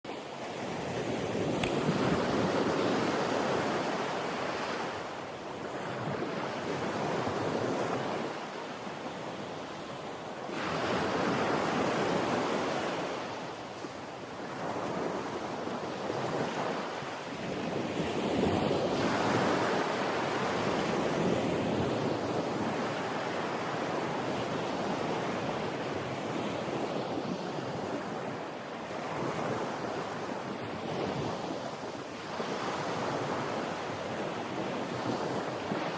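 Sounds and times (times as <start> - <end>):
sea waves breaking: 0.1 - 9.0.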